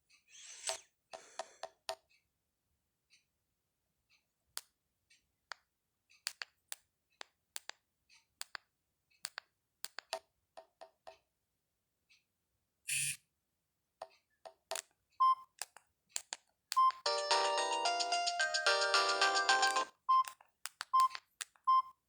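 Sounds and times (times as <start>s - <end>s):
sharp clicks and ticks: 6.2s - 7.8s, 19.6s - 21.6s.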